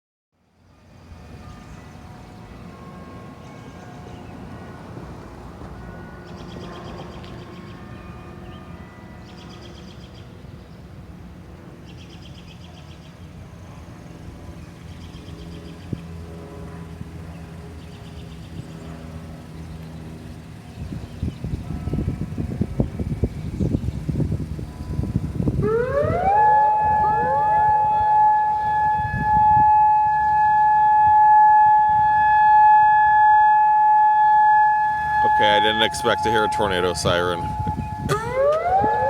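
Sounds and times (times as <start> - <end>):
steady low rumble: 34.7 - 39.0.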